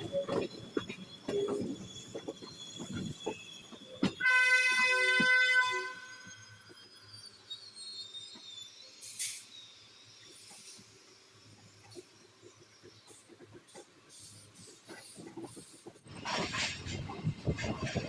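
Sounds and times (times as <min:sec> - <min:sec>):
moving train rumbling and clicking: 0:00.0 - 0:18.0
train horn: 0:04.2 - 0:06.1.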